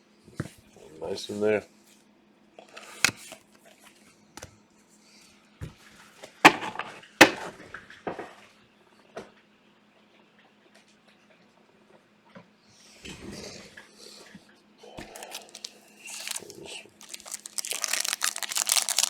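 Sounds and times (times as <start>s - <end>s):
faint hum: 12.6s - 19.0s
cards rustling and tapping: 15.0s - 19.0s.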